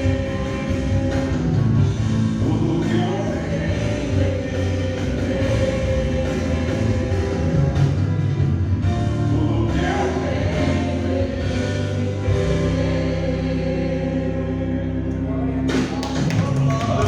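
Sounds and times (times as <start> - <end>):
gospel worship music: 0.0 - 17.0.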